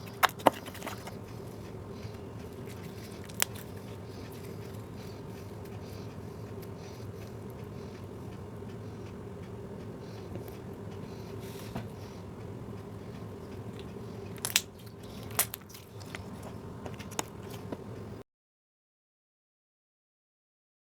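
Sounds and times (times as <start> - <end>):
steady low hum: 0.0 - 18.2
slime crackling and popping: 14.4 - 15.8
slime being squished: 14.4 - 16.2.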